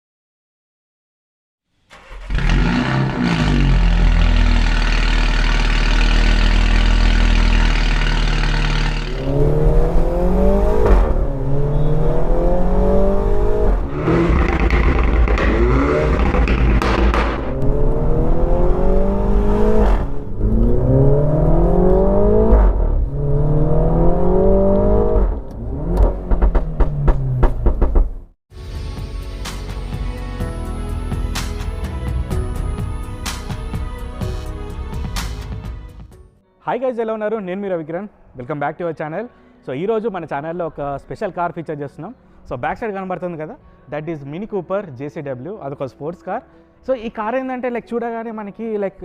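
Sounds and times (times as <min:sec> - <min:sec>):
car engine revving: 0:01.9 - 0:28.3.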